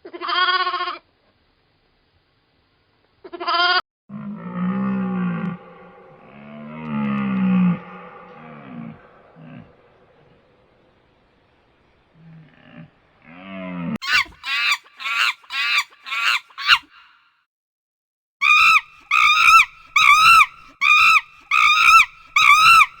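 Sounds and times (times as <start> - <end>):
animal low grunting call: 4.1 - 10.6, 12.1 - 14.0
animal short high-pitched cries: 14.0 - 16.9, 18.4 - 23.0.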